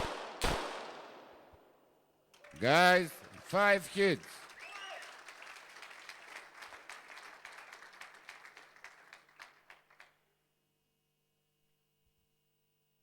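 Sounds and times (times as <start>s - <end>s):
audience applause: 2.4s - 10.1s.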